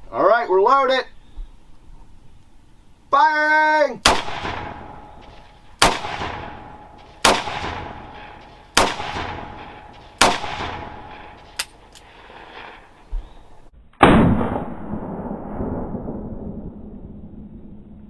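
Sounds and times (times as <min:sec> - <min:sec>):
revolver gunshots with echo: 0:04.0 - 0:12.8, 0:14.0 - 0:15.9.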